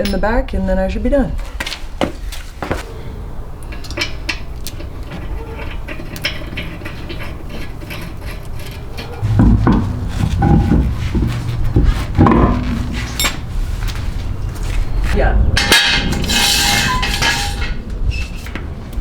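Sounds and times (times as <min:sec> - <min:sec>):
metal tools clinking: 0:09.0 - 0:17.9
low hum: 0:09.2 - 0:15.1
low rumbling with heavy knocks: 0:09.2 - 0:16.0.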